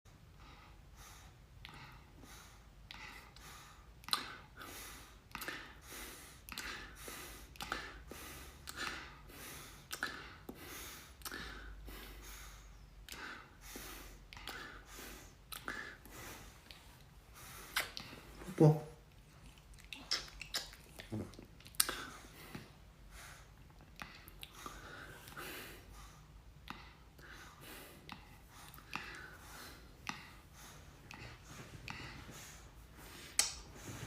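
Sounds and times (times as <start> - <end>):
man imitating dog panting: 17.9 - 19.1, 20.9 - 22.7.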